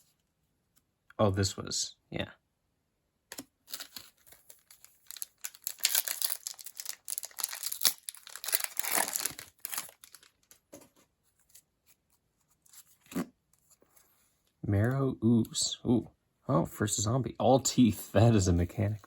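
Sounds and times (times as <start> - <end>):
wrapper tearing and crinkling: 3.3 - 10.6.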